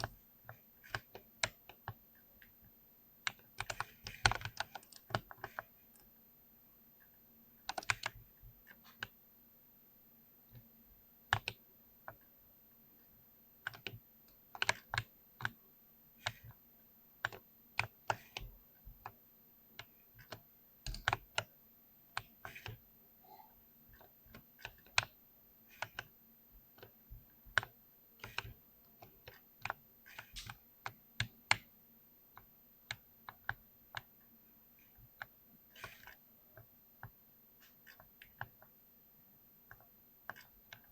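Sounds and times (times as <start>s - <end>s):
faint steady hum: 0.0s - 40.9s
mechanical keyboard typing: 0.8s - 2.0s, 3.2s - 6.1s, 7.6s - 9.2s, 11.3s - 12.2s, 13.6s - 15.6s, 16.2s - 16.6s, 17.2s - 19.2s, 19.8s - 21.5s, 22.1s - 22.8s, 23.9s - 31.7s, 34.8s - 36.2s.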